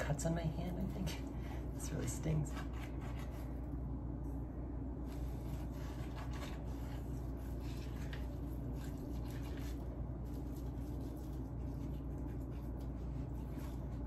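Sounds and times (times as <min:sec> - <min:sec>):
steady low hum: 0:00.0 - 0:14.0
hands rubbing chicken skin: 0:05.0 - 0:14.0.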